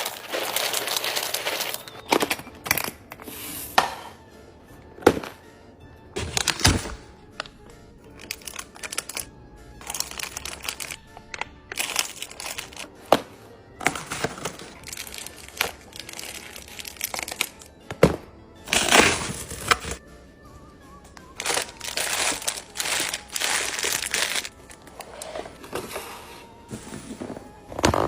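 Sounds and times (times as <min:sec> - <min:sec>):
plastic packaging crinkling: 0:00.0 - 0:02.4, 0:06.2 - 0:07.4, 0:08.1 - 0:12.9, 0:13.8 - 0:17.7, 0:18.7 - 0:20.0, 0:21.4 - 0:25.6.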